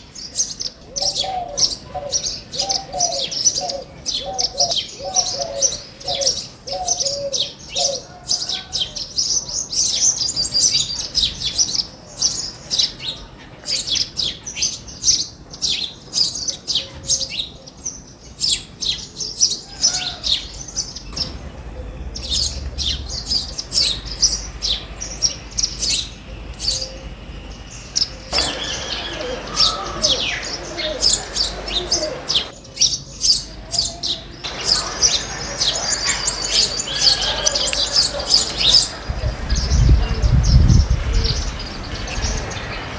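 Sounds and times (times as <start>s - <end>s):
small birds chirping: 0.0s - 42.9s
low repeated bird notes: 20.9s - 42.9s.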